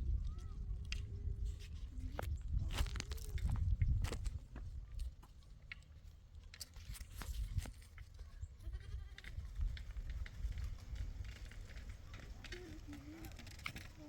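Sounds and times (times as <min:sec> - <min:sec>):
faint sheep bleat: 0:08.6 - 0:09.3.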